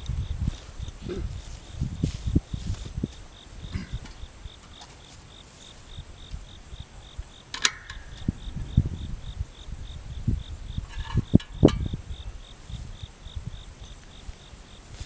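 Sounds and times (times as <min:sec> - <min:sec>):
dull low thumps: 0:00.0 - 0:04.6
crickets chirping: 0:00.0 - 0:15.0.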